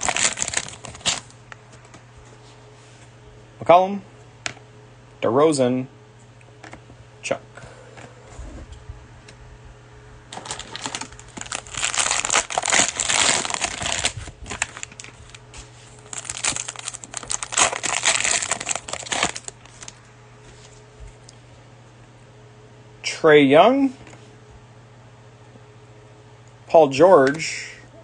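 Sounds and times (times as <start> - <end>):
cellophane wrapper crinkling: 0.0 - 1.4, 10.3 - 20.0.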